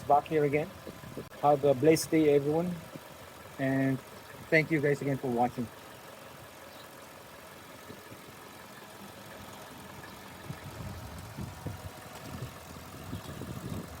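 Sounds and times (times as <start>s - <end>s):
low thumps and rumbles: 0.0s - 1.4s, 10.4s - 14.0s
car engine idling faintly: 0.0s - 14.0s.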